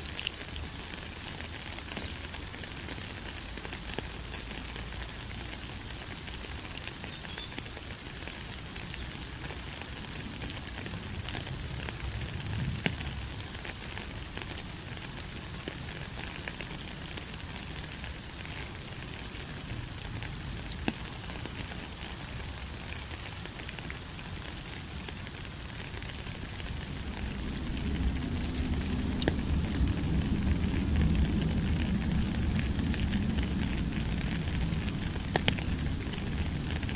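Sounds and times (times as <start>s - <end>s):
rain hissing: 0.0s - 36.9s
raindrops ticking on a surface: 0.0s - 36.9s.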